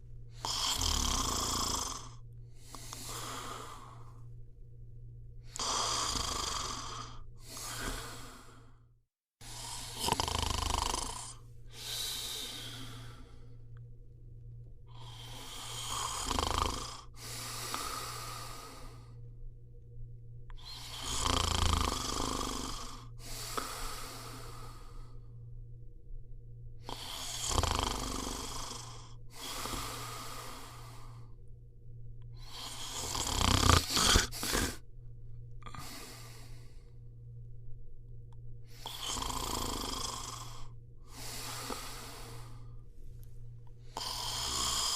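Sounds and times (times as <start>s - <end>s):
person snoring: 0.3s - 4.3s, 5.4s - 8.8s, 9.4s - 13.7s, 14.9s - 19.2s, 20.5s - 25.4s, 26.8s - 31.4s, 32.3s - 34.8s, 35.6s - 36.9s, 38.7s - 42.8s, 43.8s - 44.9s.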